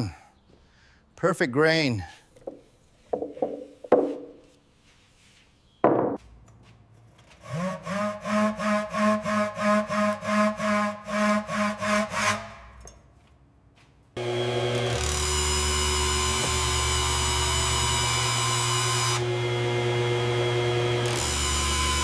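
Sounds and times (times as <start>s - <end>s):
hand saw cutting wood: 7.4s - 12.6s, 14.2s - 22.0s
loud machine hum: 14.2s - 22.0s.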